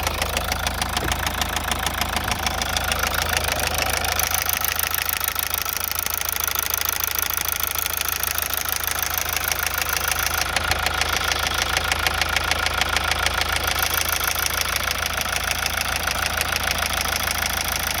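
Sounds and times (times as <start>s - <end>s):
diesel engine knocking clatter: 0.0s - 18.0s.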